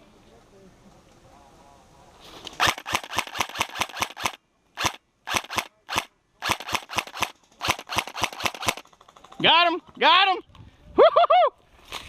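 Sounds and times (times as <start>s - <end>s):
airsoft gun firing bursts: 2.6s - 9.0s.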